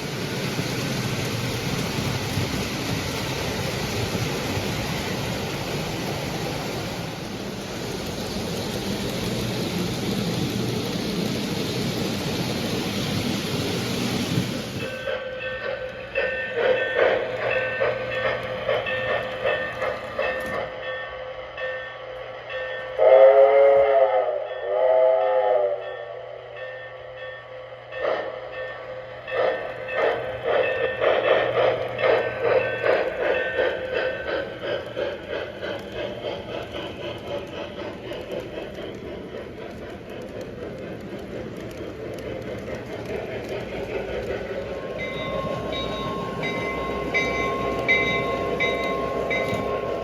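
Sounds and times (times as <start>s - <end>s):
train horn blasts: 23.0s - 25.8s
wheels clicking over rail joints: 29.9s - 50.0s.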